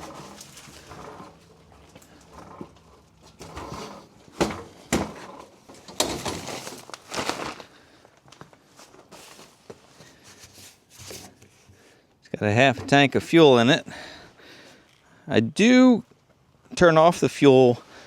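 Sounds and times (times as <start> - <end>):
knocks and clunks of handling: 0.0 - 11.5.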